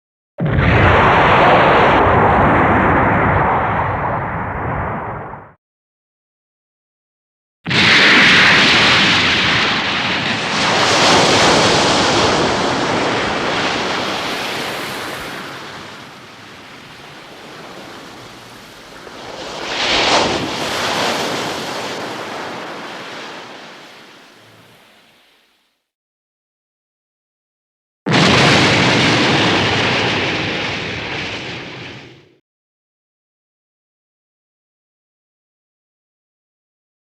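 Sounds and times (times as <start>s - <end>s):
water crashing: 7.7s - 25.5s, 28.1s - 31.8s.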